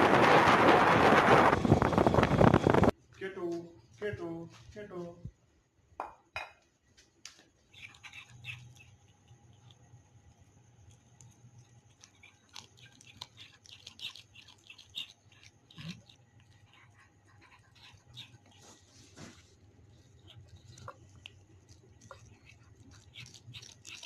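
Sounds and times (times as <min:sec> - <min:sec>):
cat chewing food: 0:07.5 - 0:24.0.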